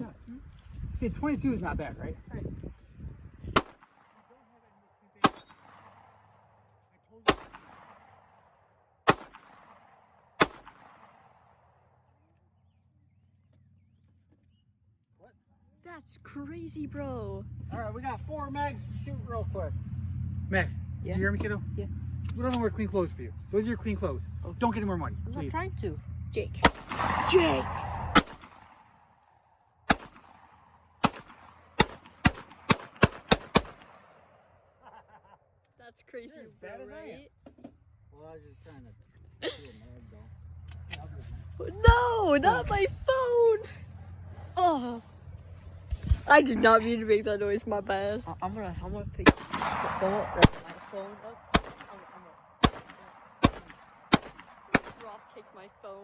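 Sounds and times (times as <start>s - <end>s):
pistol shots with echo: 3.6s - 4.2s, 5.2s - 6.4s, 7.2s - 11.6s, 26.6s - 29.0s, 29.9s - 34.4s, 49.2s - 55.4s.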